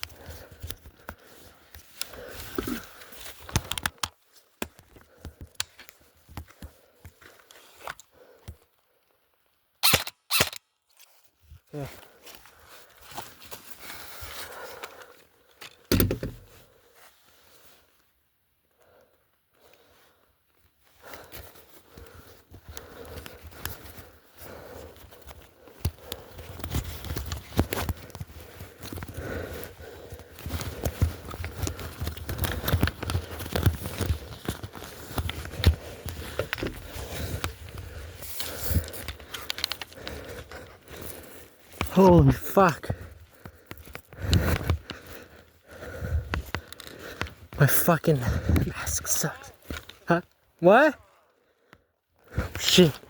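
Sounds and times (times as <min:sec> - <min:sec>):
knocks: 0:15.9 - 0:16.4.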